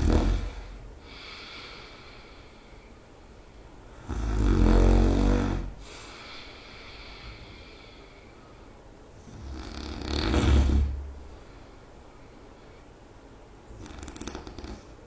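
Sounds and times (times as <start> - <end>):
person snoring with vibrating rattle: 0.0 - 1.9, 4.0 - 5.8, 9.2 - 11.1, 13.7 - 15.0
quiet breathing: 0.0 - 15.0.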